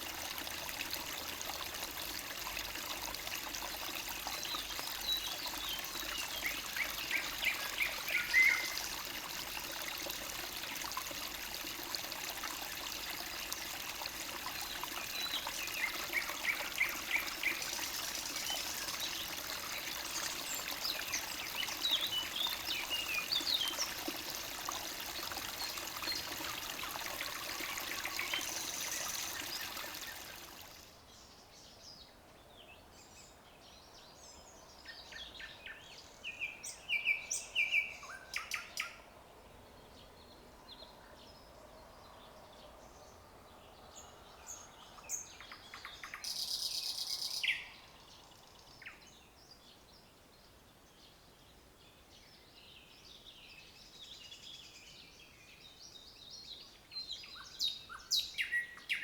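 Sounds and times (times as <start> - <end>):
stream trickling: 0.0 - 31.7, 42.9 - 50.0, 50.9 - 59.0
songbirds singing: 0.0 - 39.0, 39.6 - 59.0.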